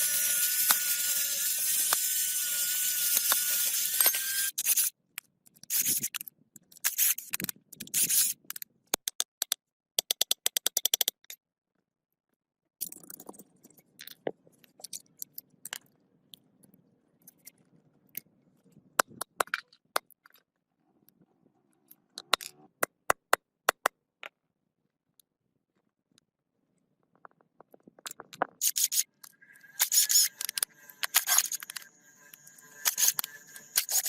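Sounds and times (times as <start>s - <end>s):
hand tool scraping metal: 32.6s - 34.0s.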